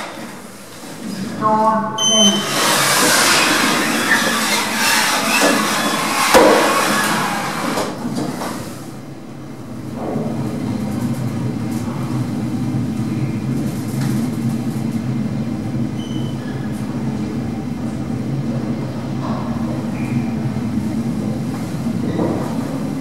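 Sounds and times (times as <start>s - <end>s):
lift car humming in motion: 0.0s - 23.0s.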